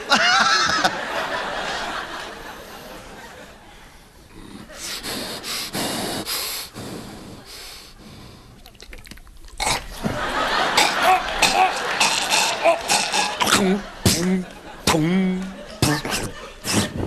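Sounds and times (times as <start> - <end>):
audience laughter: 0.0 - 5.5, 9.9 - 17.0
man making breathy huffs and snorts: 15.8 - 17.0.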